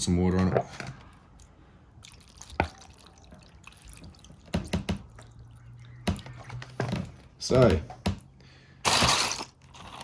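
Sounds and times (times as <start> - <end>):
water drips and splashes: 2.0 - 6.8.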